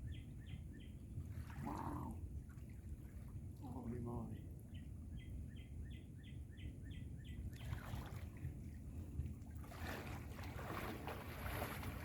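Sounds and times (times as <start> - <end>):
wind rumbling on microphone: 0.0 - 12.0
water splashing: 7.6 - 8.6, 9.4 - 12.0.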